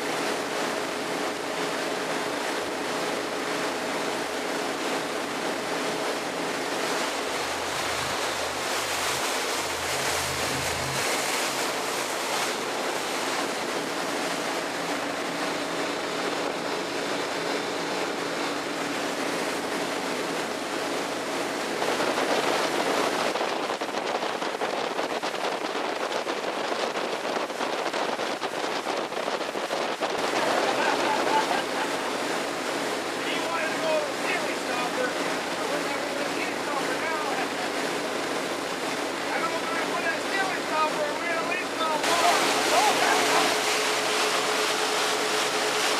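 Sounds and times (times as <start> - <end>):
wind and waves rushing: 0.0 - 45.9
wind buffeting microphone: 5.6 - 14.3, 21.2 - 31.0.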